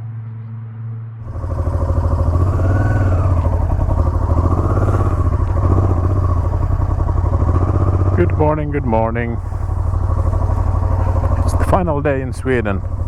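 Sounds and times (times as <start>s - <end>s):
motorcycle engine idling: 1.2s - 13.0s.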